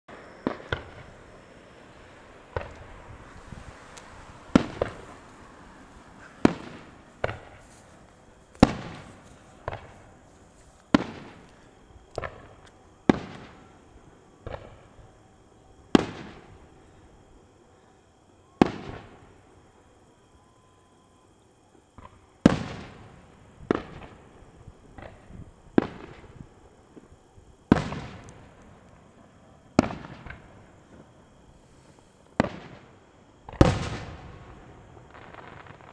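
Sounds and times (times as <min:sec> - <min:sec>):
fireworks bangs with echo: 0:00.1 - 0:13.8, 0:14.4 - 0:15.0, 0:15.9 - 0:16.6, 0:18.6 - 0:19.2, 0:22.0 - 0:24.2, 0:24.9 - 0:27.1, 0:27.7 - 0:28.7, 0:29.6 - 0:31.1, 0:32.4 - 0:35.9
fireworks crackle: 0:00.1 - 0:15.0, 0:27.7 - 0:35.9.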